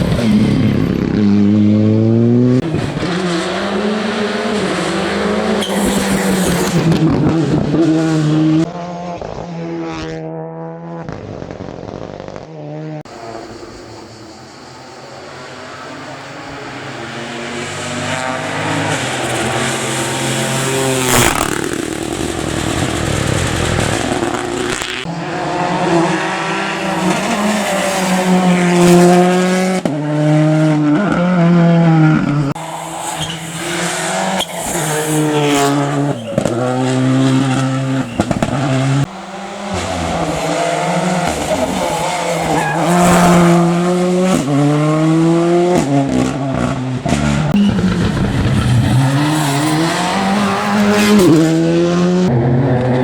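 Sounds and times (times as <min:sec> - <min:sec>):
rally car engine revving: 0:00.0 - 0:53.0.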